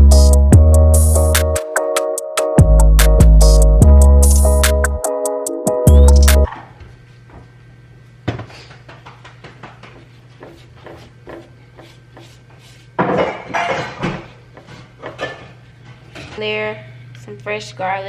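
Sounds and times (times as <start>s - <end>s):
utensils and dishes clinking: 13.0s - 14.3s, 15.0s - 16.5s.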